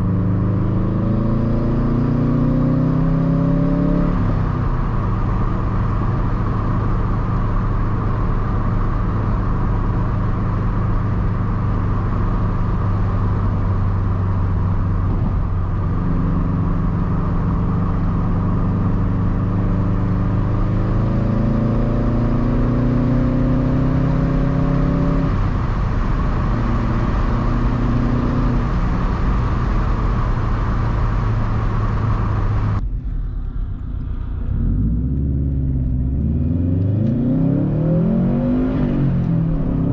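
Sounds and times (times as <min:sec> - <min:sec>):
car exhaust droning while driving: 0:00.0 - 0:39.9.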